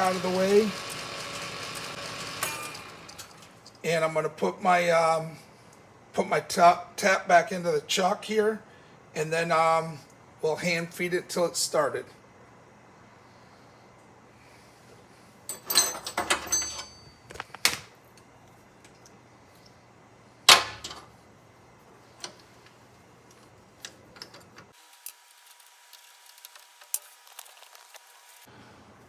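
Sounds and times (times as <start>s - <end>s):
metal clinks and knocks: 15.5s - 17.4s.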